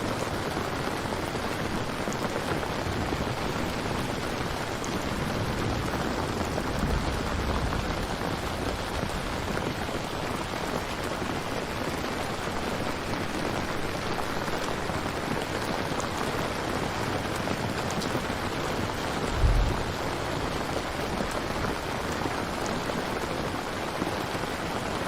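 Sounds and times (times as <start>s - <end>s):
dense rain falling: 0.0s - 25.0s
low rumble: 19.2s - 20.6s.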